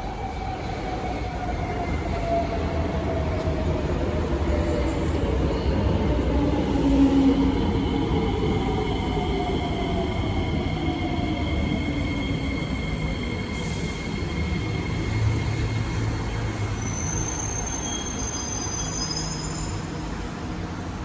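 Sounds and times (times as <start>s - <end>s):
wheel and brake squeals: 15.0s - 20.1s.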